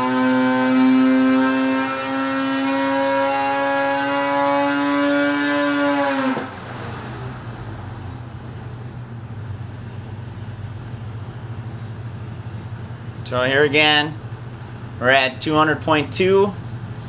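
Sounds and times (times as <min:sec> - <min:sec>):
engine winding down rumble: 0:06.1 - 0:13.5.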